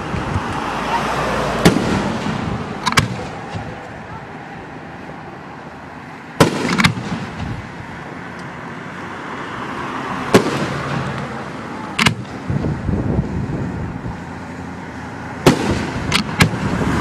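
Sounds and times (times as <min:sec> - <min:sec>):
crowd noise: 0:00.0 - 0:12.8
fireworks bangs: 0:01.5 - 0:04.0, 0:06.4 - 0:07.8, 0:10.3 - 0:11.2, 0:15.4 - 0:16.8
fireworks crackle: 0:15.5 - 0:16.1.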